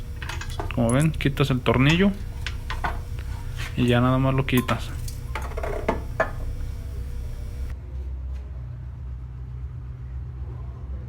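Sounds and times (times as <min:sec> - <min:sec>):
steady low hum: 0:00.0 - 0:11.0
metallic clinks and knocks: 0:00.2 - 0:03.1.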